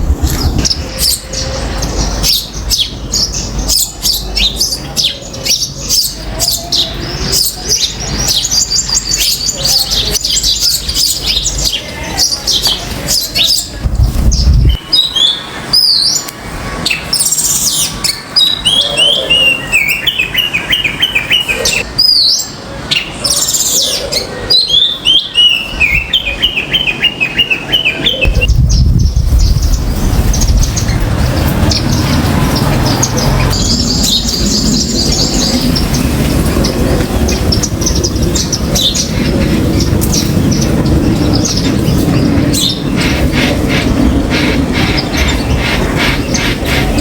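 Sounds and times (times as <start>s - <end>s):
low rumble: 0.0s - 2.2s, 28.3s - 44.3s
birds chirping and calling: 0.0s - 47.0s.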